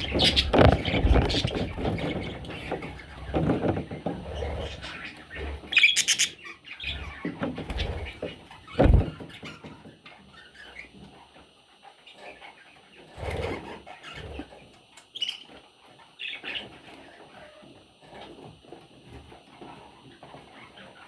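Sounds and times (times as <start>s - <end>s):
baby birds rustling in nest: 0.0s - 5.8s.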